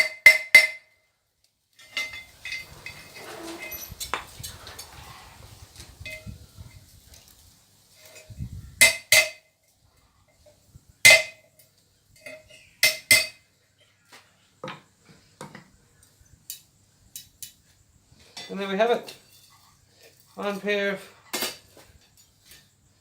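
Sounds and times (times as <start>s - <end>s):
hammer striking metal on anvil: 0.0s - 0.9s, 8.8s - 9.4s, 11.0s - 11.4s, 12.2s - 13.4s.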